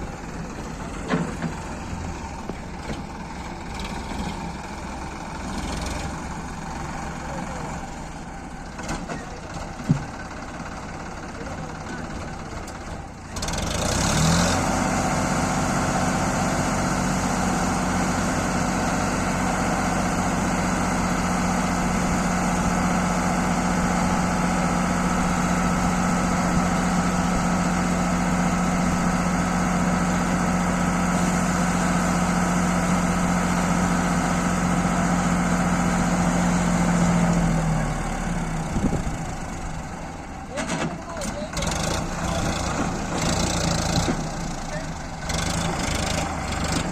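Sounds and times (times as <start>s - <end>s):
diesel engine revving: 0.0s - 46.9s.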